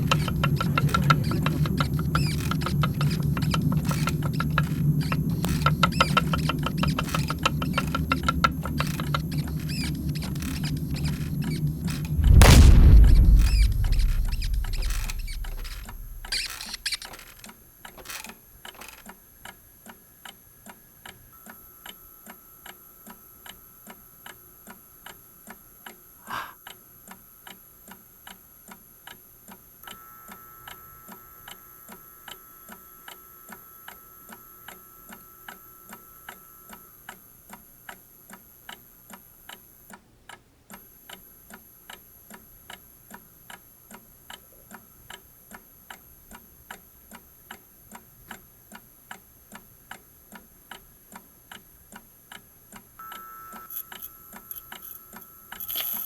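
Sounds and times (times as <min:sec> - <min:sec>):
clock ticking: 0:00.0 - 0:12.6
low boom: 0:00.0 - 0:17.3.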